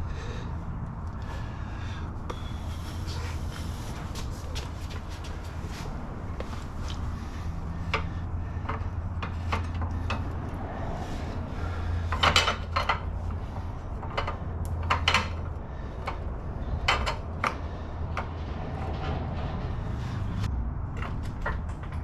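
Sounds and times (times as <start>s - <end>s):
steady low hum: 0.0s - 22.0s
hand tools and parts clinking: 12.0s - 16.2s.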